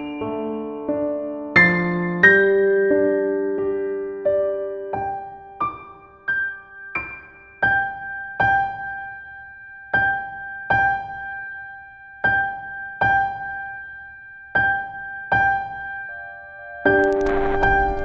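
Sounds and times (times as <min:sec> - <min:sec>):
lower keyboard note: 0:17.0 - 0:18.0.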